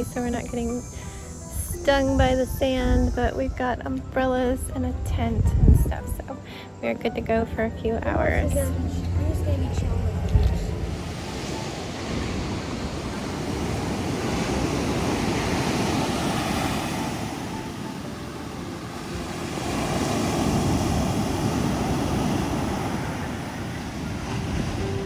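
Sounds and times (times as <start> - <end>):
wind buffeting microphone: 0.0 - 6.4, 7.0 - 25.0
ocean surf breaking: 8.4 - 25.0.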